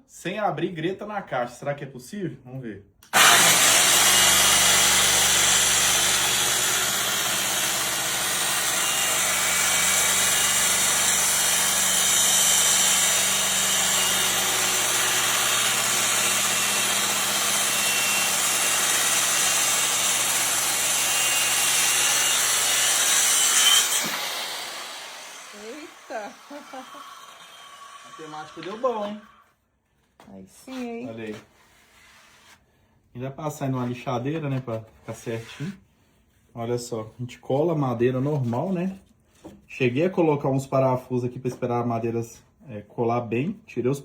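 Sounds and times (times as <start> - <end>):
power saw cutting wood: 3.1 - 29.5.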